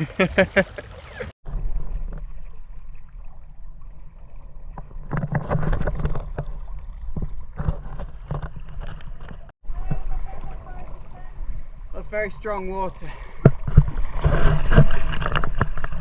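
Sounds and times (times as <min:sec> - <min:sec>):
river water rushing and splashing: 0:00.0 - 0:01.3.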